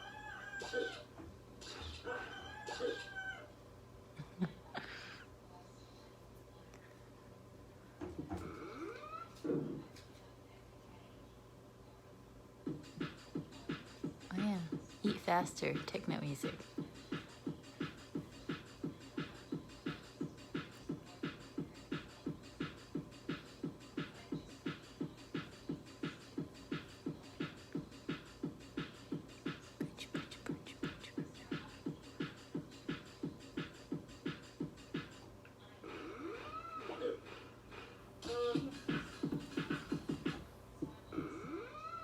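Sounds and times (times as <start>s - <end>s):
techno drum beat: 12.6s - 35.2s, 37.7s - 41.3s.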